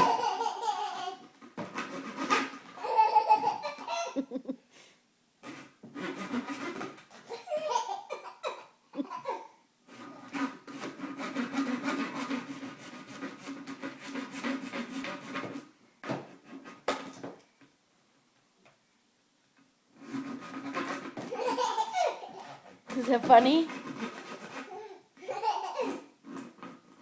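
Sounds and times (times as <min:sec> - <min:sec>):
child giggling: 0:00.0 - 0:01.2, 0:02.8 - 0:04.7, 0:07.3 - 0:09.6, 0:21.3 - 0:22.6, 0:24.7 - 0:26.1.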